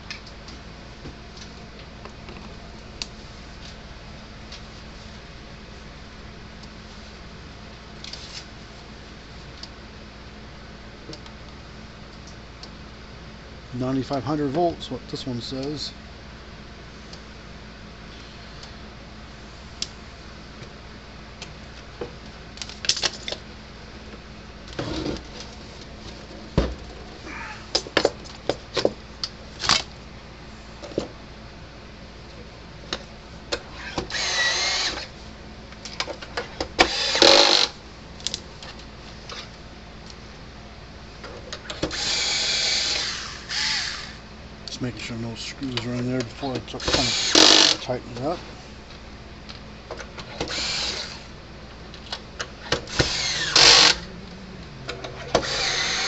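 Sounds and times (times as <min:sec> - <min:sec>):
power drill driving screws: 0:33.9 - 0:35.1, 0:36.8 - 0:37.8, 0:41.8 - 0:44.2, 0:46.8 - 0:47.8, 0:50.3 - 0:51.3, 0:52.7 - 0:54.0, 0:55.3 - 0:56.0
parts and tools clicking: 0:51.9 - 0:54.1.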